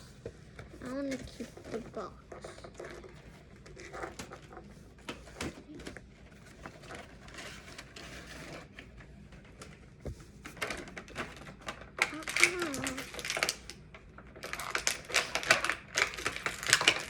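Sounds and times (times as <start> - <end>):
packaging rustling: 0.0 - 17.0
packaging being opened: 10.4 - 17.0.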